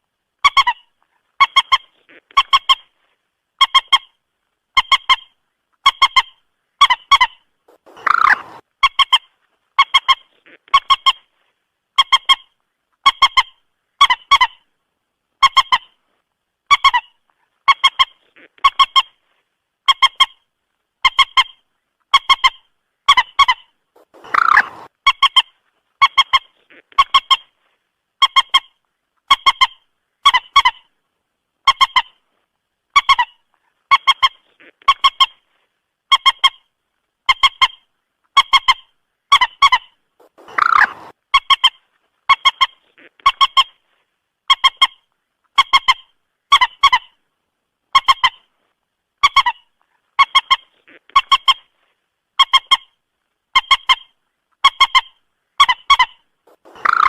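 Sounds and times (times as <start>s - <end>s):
harsh moorhen call: 6.8s - 8.6s, 23.4s - 24.9s, 39.6s - 41.1s, 55.6s - 57.0s
moorhen honking calls: 7.7s - 8.6s, 24.0s - 24.9s, 40.2s - 41.1s, 56.5s - 57.0s.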